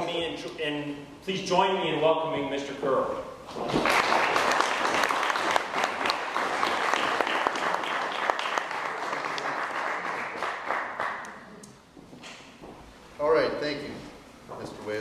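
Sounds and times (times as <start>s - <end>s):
audience applauding: 3.7s - 11.5s.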